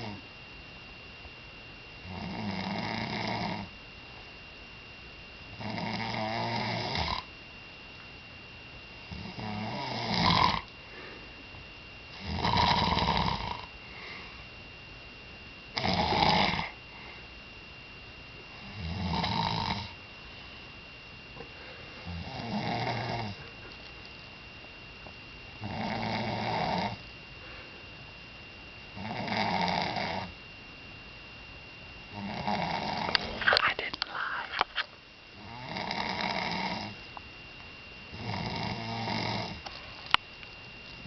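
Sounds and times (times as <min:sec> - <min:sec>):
person snoring: 0:02.1 - 0:03.7, 0:05.6 - 0:07.3, 0:09.1 - 0:11.2, 0:12.2 - 0:14.3, 0:15.8 - 0:16.8, 0:18.6 - 0:20.0, 0:22.0 - 0:23.6, 0:25.6 - 0:27.6, 0:29.0 - 0:30.3, 0:32.2 - 0:34.7, 0:35.4 - 0:37.0, 0:38.2 - 0:39.6
quiet breathing: 0:10.8 - 0:11.6, 0:13.6 - 0:14.5, 0:16.6 - 0:17.4, 0:21.4 - 0:22.2, 0:27.3 - 0:28.0, 0:33.0 - 0:34.9.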